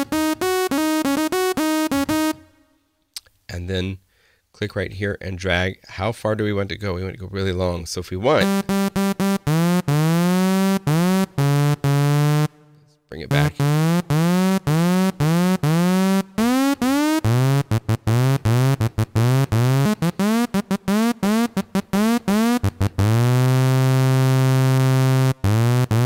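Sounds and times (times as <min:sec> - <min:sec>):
synthesizer low swooping notes: 0:00.0 - 0:02.6, 0:08.4 - 0:12.7, 0:13.3 - 0:26.0.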